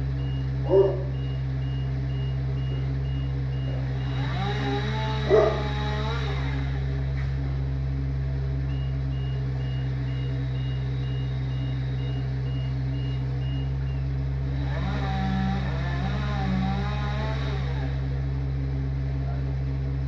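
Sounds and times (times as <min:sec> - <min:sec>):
vehicle backup alarm beeping: 0:00.0 - 0:05.8, 0:08.5 - 0:14.3
engine running: 0:00.0 - 0:20.0.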